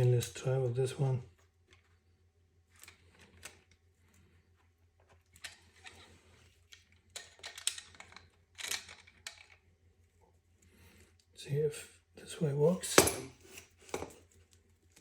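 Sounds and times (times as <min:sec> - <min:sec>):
faint metal clicks and scrapes: 0:02.7 - 0:11.3.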